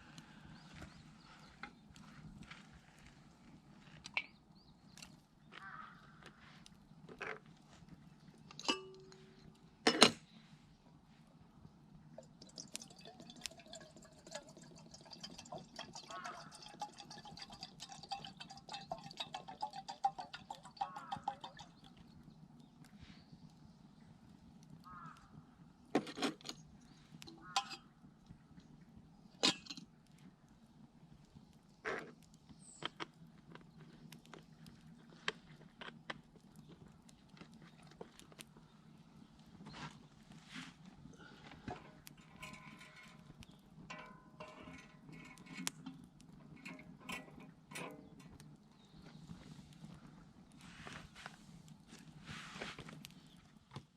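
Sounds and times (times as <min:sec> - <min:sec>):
metal cookware clattering: 0:08.5 - 0:09.2, 0:27.4 - 0:27.8, 0:41.7 - 0:48.4
metal cookware clinking: 0:08.5 - 0:09.2, 0:27.4 - 0:27.8, 0:41.7 - 0:48.4
water trickling: 0:12.2 - 0:22.0.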